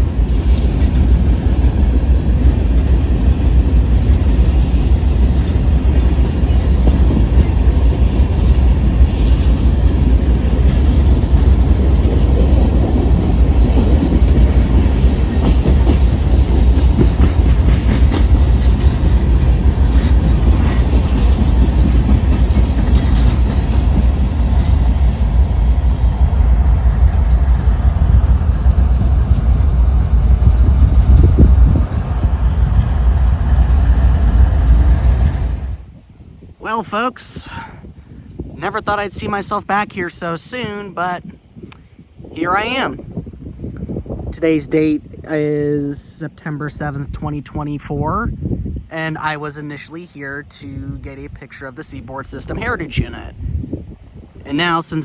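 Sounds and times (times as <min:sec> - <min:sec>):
train wheels clicking over rail joints: 0:00.0 - 0:27.4
train low rumble: 0:00.0 - 0:55.0.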